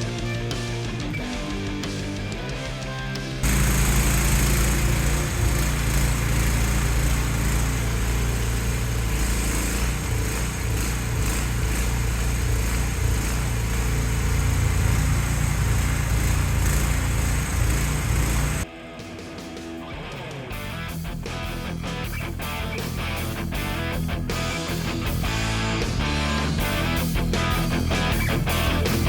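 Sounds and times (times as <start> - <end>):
mini excavator engine running: 3.4 - 18.6.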